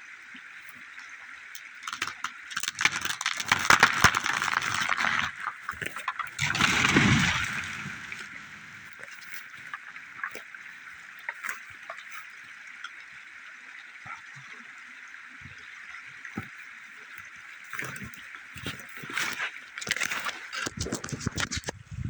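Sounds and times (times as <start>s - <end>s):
creek rushing: 2.7s - 12.4s.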